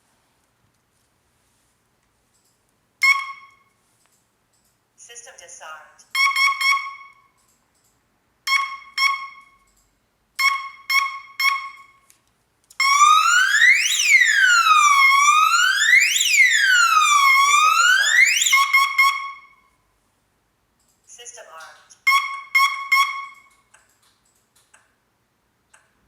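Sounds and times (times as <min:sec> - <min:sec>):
alarm panel beeping: 0:12.8 - 0:19.6
alarm siren wailing: 0:12.8 - 0:19.7, 0:22.1 - 0:23.5.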